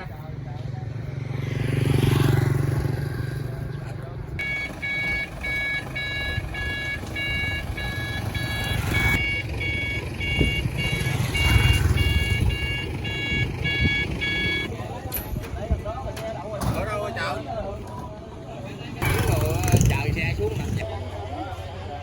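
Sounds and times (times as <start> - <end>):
short high beeps: 4.4 - 14.7.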